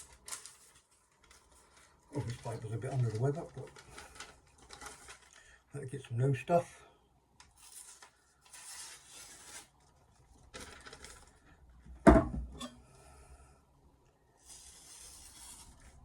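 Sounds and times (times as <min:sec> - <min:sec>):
knife slicing through paper: 0:07.6 - 0:09.8, 0:14.4 - 0:16.0.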